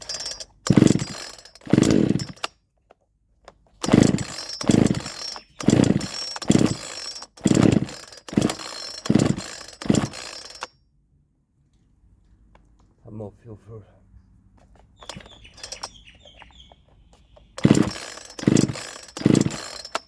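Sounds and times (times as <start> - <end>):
chainsaw revving: 0.0 - 2.5, 3.8 - 10.7, 15.0 - 16.0, 17.6 - 20.0.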